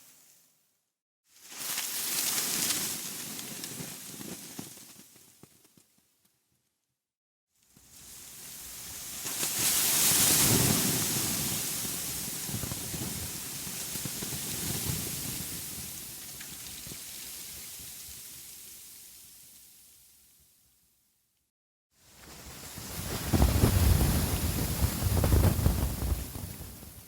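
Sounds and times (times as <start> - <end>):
rushing wind: 22.5 - 27.0.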